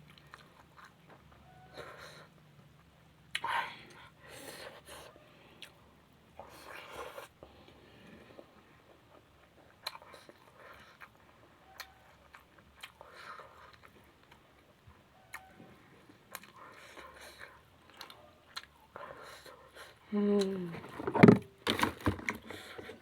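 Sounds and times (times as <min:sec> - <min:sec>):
chewing vegetables: 0:00.0 - 0:23.0.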